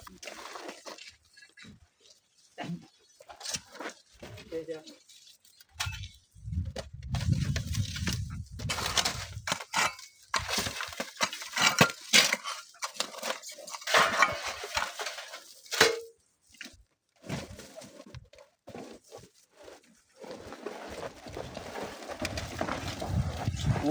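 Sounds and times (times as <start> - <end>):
sand sliding with low rumble: 22.6 - 23.9.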